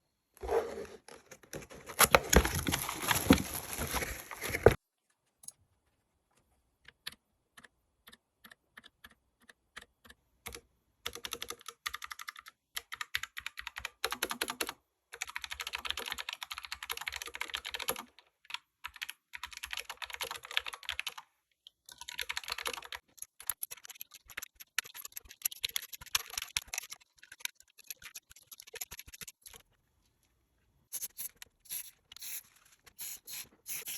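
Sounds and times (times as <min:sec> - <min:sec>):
typing on mechanical keyboard: 0:07.0 - 0:21.3, 0:21.9 - 0:29.6.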